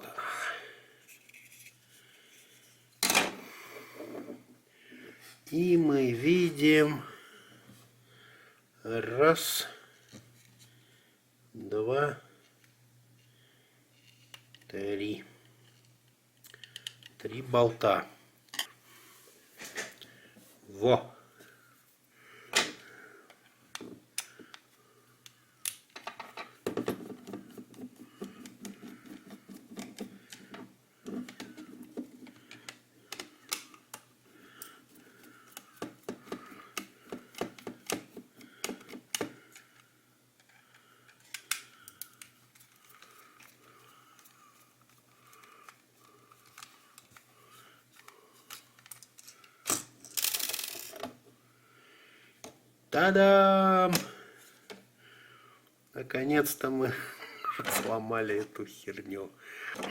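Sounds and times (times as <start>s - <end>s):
plastic parts rattling: 47.9s - 51.1s.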